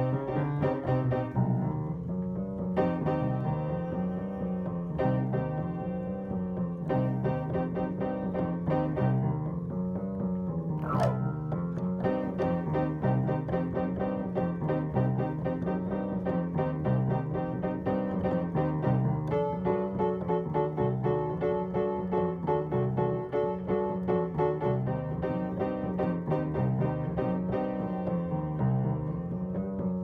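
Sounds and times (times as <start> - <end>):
piano background music with beat: 0.0 - 30.0.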